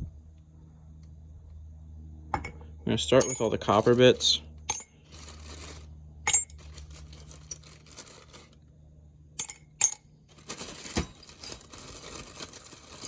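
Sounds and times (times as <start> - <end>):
faint low hum: 0.0 - 13.0
copper scrap clinking in crucible: 2.4 - 5.7, 6.3 - 7.8, 9.4 - 12.0.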